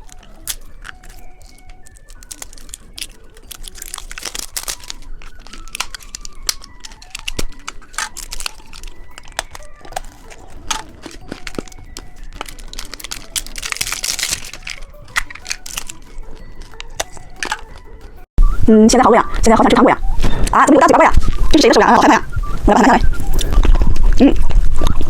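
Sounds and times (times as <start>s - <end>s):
wrapper tearing: 0.0s - 18.0s
plastic wrappers crinkling: 0.0s - 18.3s
faint background music: 0.0s - 25.0s.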